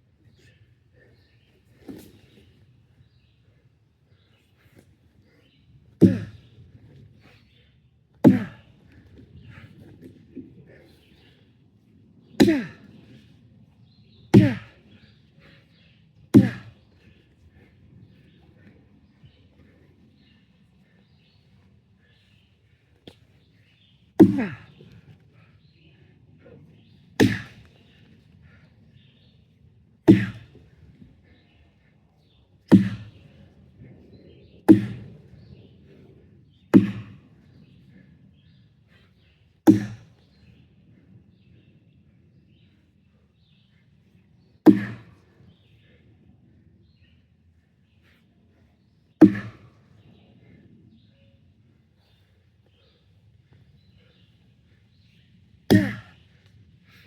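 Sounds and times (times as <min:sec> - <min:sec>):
axe chopping wood: 0:06.0 - 0:06.4, 0:08.2 - 0:08.6, 0:12.4 - 0:12.8, 0:14.4 - 0:14.7, 0:16.4 - 0:16.7, 0:24.2 - 0:24.7, 0:27.2 - 0:27.6, 0:30.1 - 0:30.5, 0:32.7 - 0:33.2, 0:34.7 - 0:35.1, 0:36.8 - 0:37.2, 0:39.7 - 0:40.1, 0:44.7 - 0:45.1, 0:49.2 - 0:49.7, 0:55.7 - 0:56.1.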